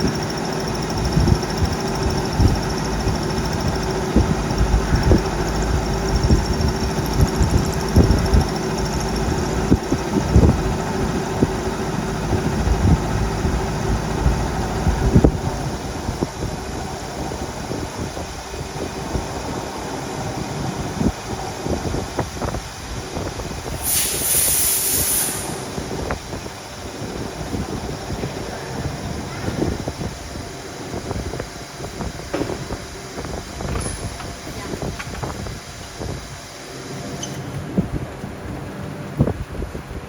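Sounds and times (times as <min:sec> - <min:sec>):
milling machine running: 0:00.0 - 0:33.8
short high hiss: 0:23.7 - 0:26.0.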